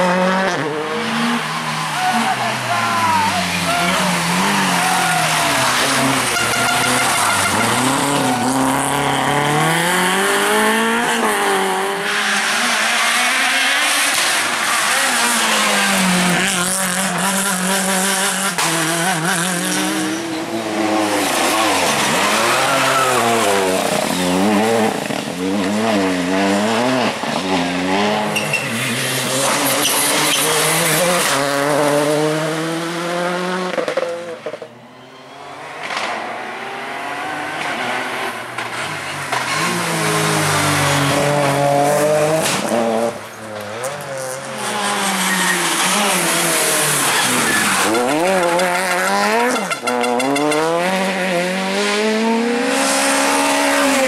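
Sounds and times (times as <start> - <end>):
rally car engines revving: 0.0 - 54.0.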